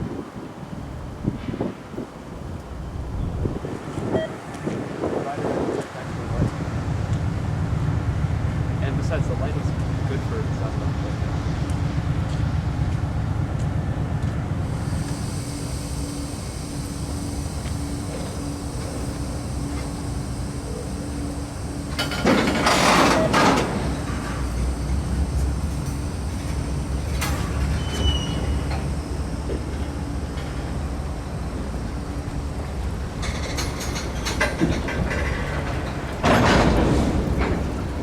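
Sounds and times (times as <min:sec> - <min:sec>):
freight train rumbling: 0:00.0 - 0:38.0
high squeal: 0:14.8 - 0:29.4.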